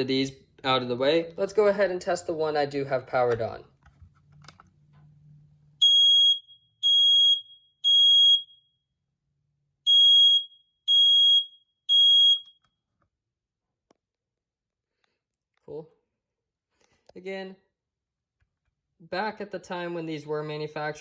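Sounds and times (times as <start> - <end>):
smoke alarm beeping: 5.8 - 8.7, 9.9 - 12.6.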